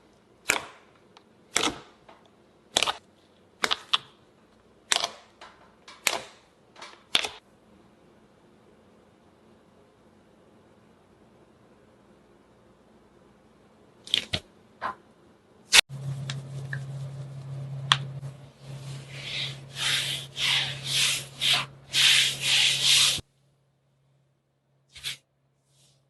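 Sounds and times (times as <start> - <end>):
low steady hum: 14.6 - 25.7.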